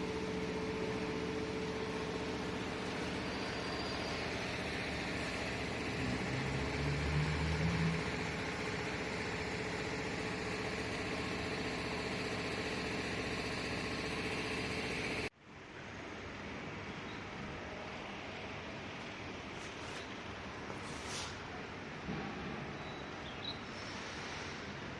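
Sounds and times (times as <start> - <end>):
machine humming with faint whine: 0.0 - 15.3
hiss: 20.8 - 21.4, 23.7 - 24.9.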